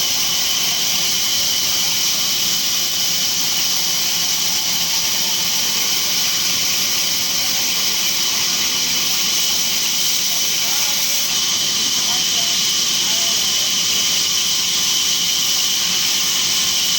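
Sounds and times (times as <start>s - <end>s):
sawmill saw hissing and whining: 0.0s - 16.9s.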